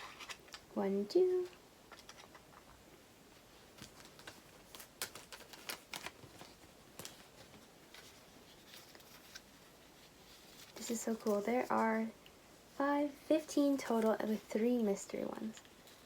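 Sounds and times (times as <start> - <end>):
plastic packaging crinkling: 3.7 - 9.7
cards being handled: 3.7 - 11.8.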